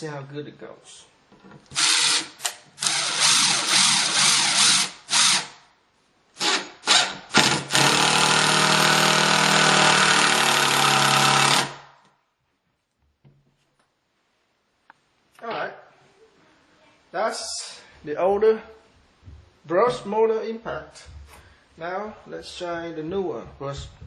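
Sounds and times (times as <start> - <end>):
impact driver driving screw into wood: 1.7 - 5.6, 6.4 - 12.0.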